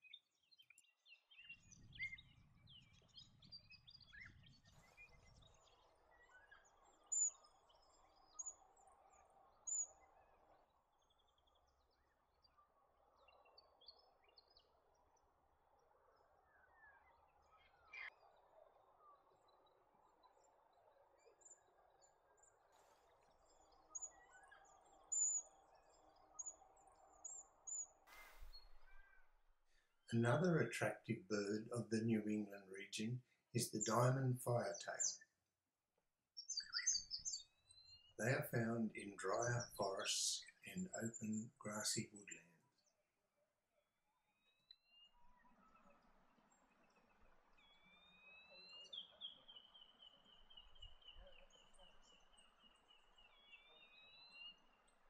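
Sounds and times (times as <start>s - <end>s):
finches calling: 23.1s - 29.3s, 36.4s - 42.4s.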